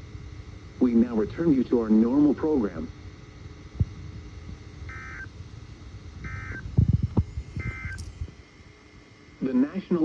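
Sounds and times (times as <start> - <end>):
warbling digital data tones: 7.3 - 8.3.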